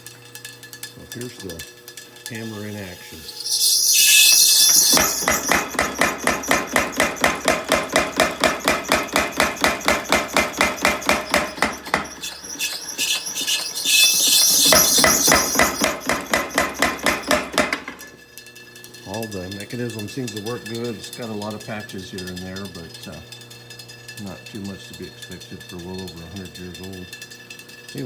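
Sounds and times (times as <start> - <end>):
high squeal: 2.4 - 18.2.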